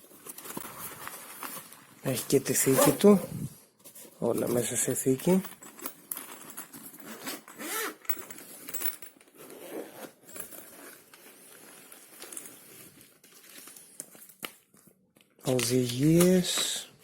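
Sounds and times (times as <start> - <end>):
case rustling and handling: 0.0 - 2.0, 5.4 - 14.4
zipper being pulled open: 2.7 - 3.5, 6.9 - 8.2, 9.4 - 11.0.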